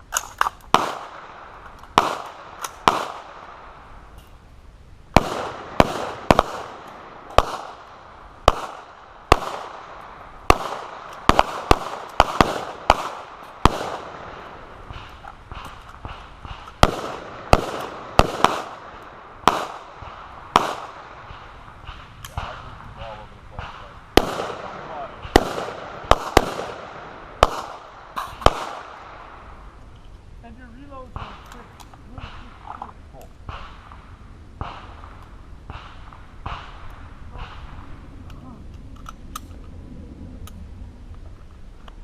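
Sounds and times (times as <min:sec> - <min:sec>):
sharp gunshots: 0:00.2 - 0:03.8, 0:05.1 - 0:29.6, 0:31.0 - 0:32.7, 0:33.4 - 0:38.0.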